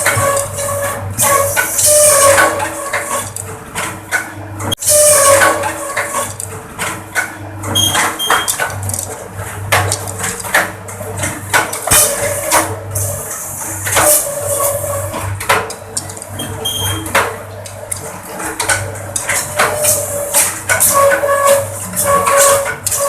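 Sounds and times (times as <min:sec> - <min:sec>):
bamboo pieces clacking: 0:08.4 - 0:10.7, 0:15.5 - 0:21.1.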